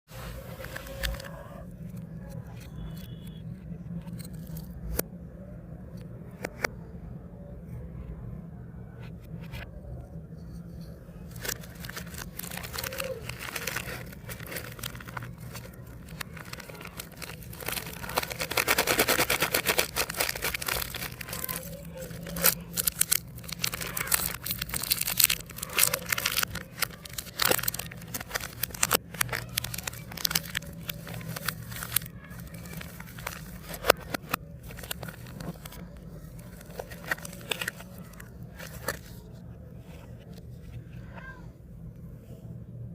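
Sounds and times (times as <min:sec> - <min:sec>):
plastic wrappers crinkling and tearing: 0:00.3 - 0:01.9, 0:11.3 - 0:39.2.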